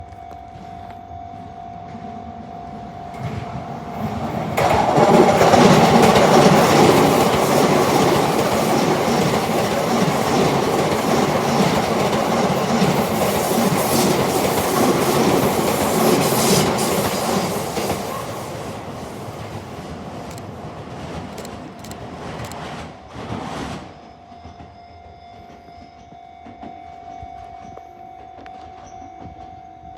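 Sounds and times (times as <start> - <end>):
electric train passing: 0.2 - 29.9
wheels clattering over rail joints: 4.0 - 23.0.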